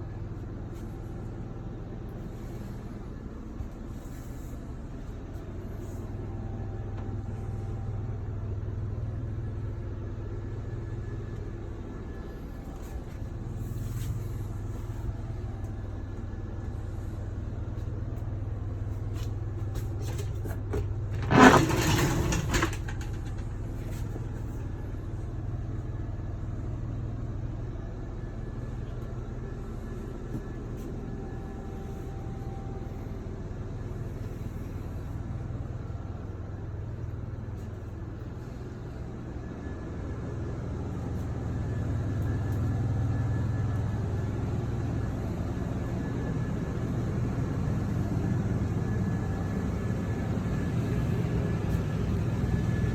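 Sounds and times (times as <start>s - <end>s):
vehicle engine humming: 22.7s - 52.9s.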